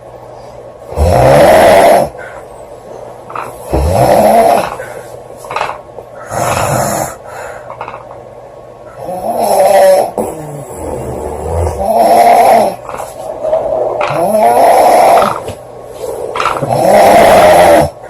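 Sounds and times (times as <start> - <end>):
woman snoring loudly: 0.9 - 2.2, 3.7 - 4.8, 6.3 - 7.2, 9.0 - 12.9, 14.0 - 15.4, 16.5 - 18.0.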